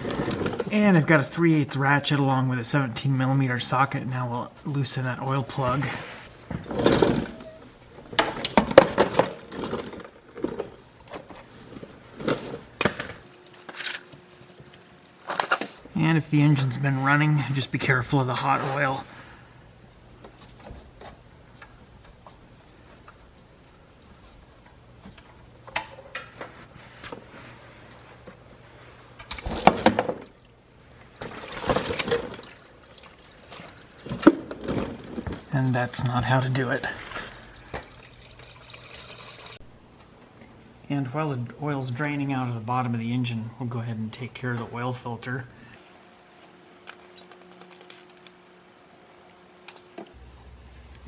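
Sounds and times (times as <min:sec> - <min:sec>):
oil splashing into a pan: 0:37.0 - 0:39.6.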